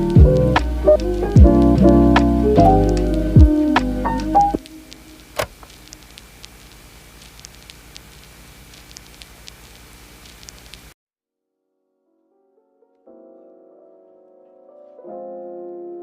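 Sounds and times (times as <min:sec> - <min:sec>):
faint crackling hiss: 0:00.0 - 0:11.0.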